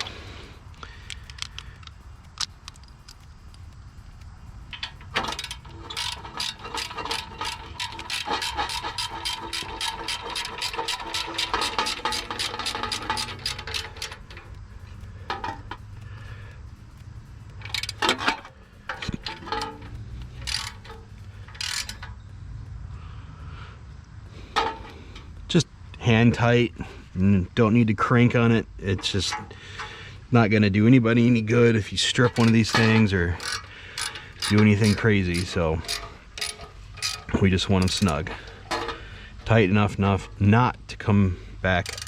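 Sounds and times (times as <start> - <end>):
ratchet wrench clicking: 0.0 - 22.3, 32.0 - 39.1, 41.7 - 42.0.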